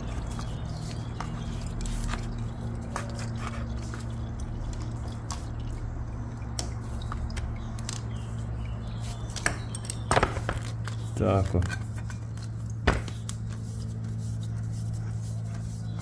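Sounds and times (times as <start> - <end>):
oil dripping into a pan: 0.2 - 8.9.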